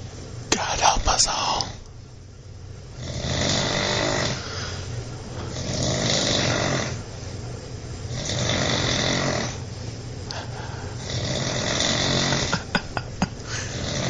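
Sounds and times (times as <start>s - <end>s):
man snoring loudly: 3.0s - 4.4s, 5.5s - 7.0s, 8.1s - 9.6s, 10.9s - 12.8s, 13.5s - 14.0s
quiet breaths: 4.0s - 7.4s, 9.4s - 12.3s.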